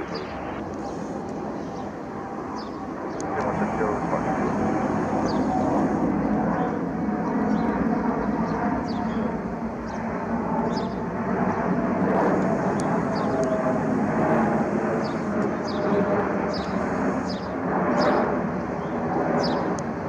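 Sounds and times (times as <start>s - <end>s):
jet airliner flying over: 0.0s - 20.0s.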